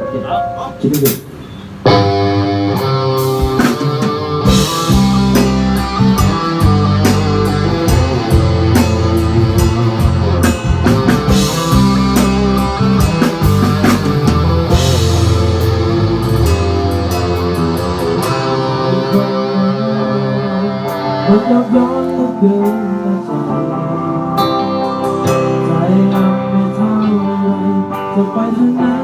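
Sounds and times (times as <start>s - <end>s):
electric guitar lines: 0.0s - 29.0s
drum kit beat: 0.9s - 20.2s
bass guitar: 1.8s - 29.0s.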